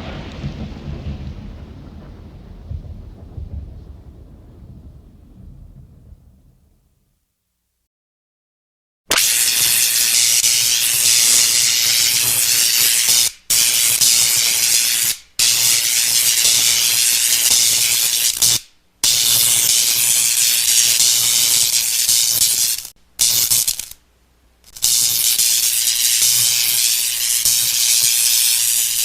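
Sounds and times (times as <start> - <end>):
steady low hum: 22.5 - 28.6
harsh hissing like escaping steam: 24.7 - 29.0.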